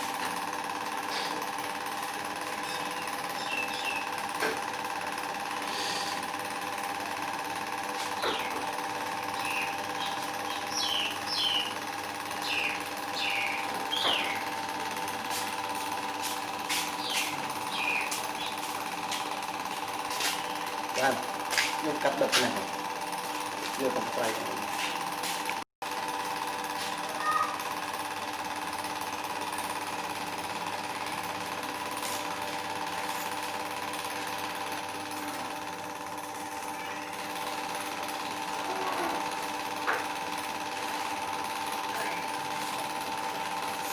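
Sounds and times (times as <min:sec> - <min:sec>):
electric power tool whining: 0:00.0 - 0:43.9
steady mechanical hum: 0:00.0 - 0:43.9
high bird chirps: 0:09.4 - 0:11.7, 0:12.4 - 0:14.4, 0:17.0 - 0:18.6.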